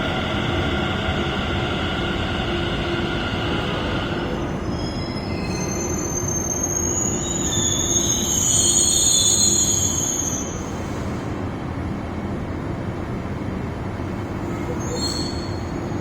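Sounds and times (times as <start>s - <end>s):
metro train rumble: 0.0s - 16.0s
high-pitched wheel squeal: 4.6s - 10.7s, 14.5s - 16.0s.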